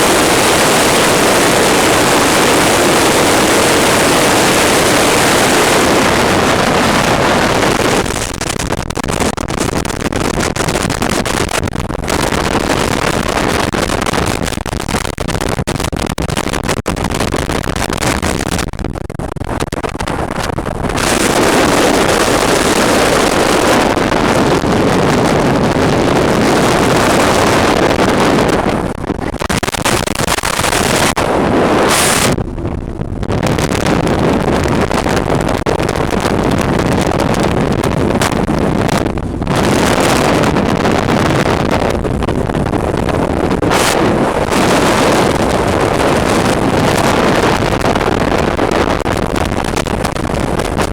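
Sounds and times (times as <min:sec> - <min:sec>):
wind buffeting microphone: 0:00.0 - 0:50.9.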